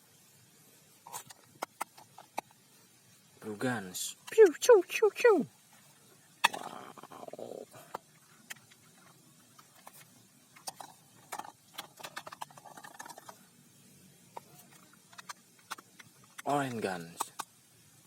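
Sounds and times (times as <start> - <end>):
plastic toy guns clicking and knocking: 15.0 - 17.5.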